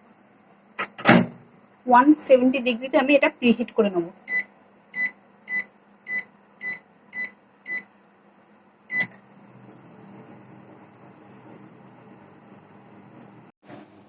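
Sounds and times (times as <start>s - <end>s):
oven running hum: 0.0s - 14.0s
microwave control panel beeping: 4.2s - 7.9s, 8.9s - 9.2s.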